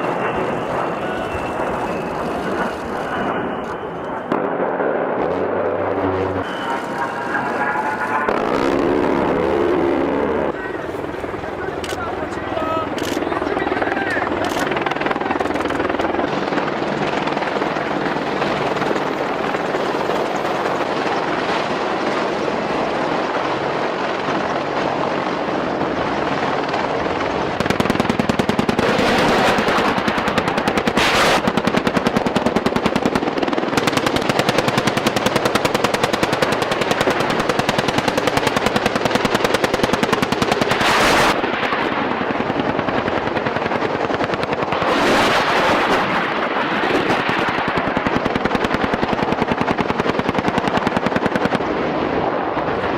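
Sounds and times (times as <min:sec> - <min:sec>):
helicopter rotor drone: 0:00.0 - 0:52.9
rapid automatic gunfire: 0:27.5 - 0:41.4, 0:47.1 - 0:51.8.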